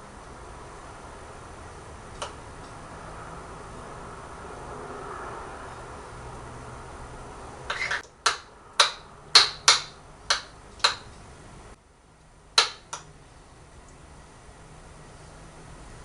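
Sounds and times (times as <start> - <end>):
kitchen utensil tapping: 7.7 - 11.1, 12.6 - 13.1.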